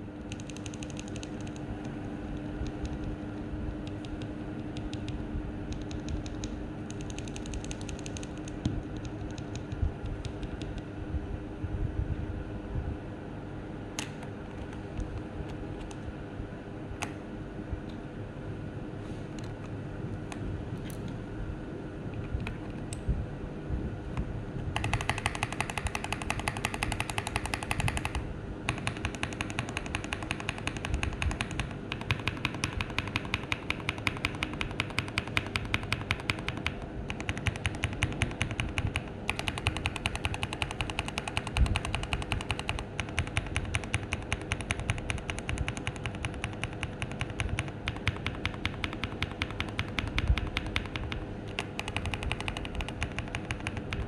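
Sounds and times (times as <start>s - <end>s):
mechanical keyboard typing: 0.0s - 3.2s, 3.9s - 10.8s, 24.8s - 54.0s
steady low hum: 0.0s - 54.0s.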